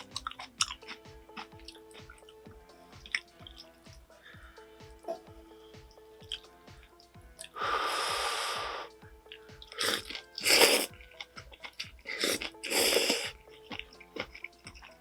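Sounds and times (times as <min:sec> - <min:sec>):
chewing with mouth clicks: 0:00.0 - 0:02.4, 0:03.0 - 0:03.8, 0:06.2 - 0:07.6, 0:09.2 - 0:15.0
noisy eating bursts: 0:00.0 - 0:04.1, 0:06.2 - 0:15.0
faint background music: 0:00.0 - 0:15.0.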